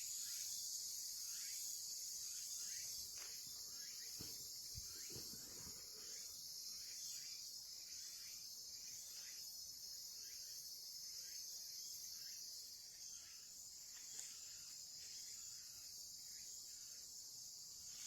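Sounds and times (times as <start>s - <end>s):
high-pitched insect chorus: 0.0s - 18.0s.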